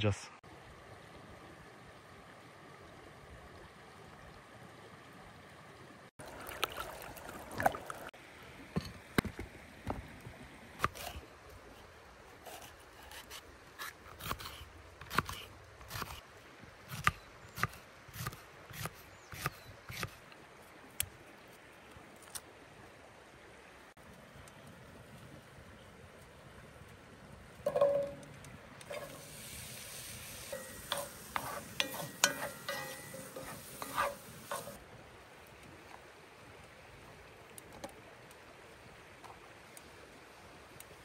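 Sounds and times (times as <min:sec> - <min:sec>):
stream rushing: 0:00.0 - 0:12.3, 0:26.9 - 0:41.0.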